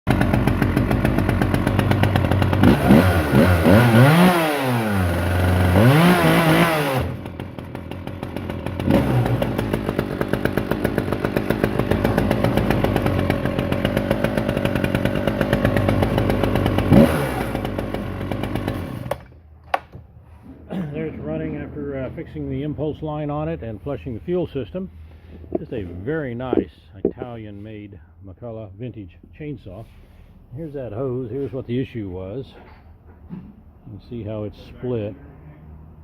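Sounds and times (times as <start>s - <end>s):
chainsaw revving and idling: 0.1s - 19.3s.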